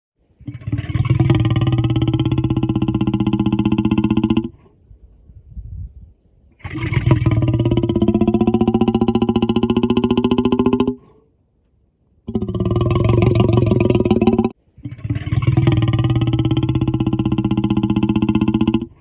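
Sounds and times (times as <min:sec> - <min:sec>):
stomach growling: 0:06.6 - 0:11.1, 0:12.3 - 0:19.0.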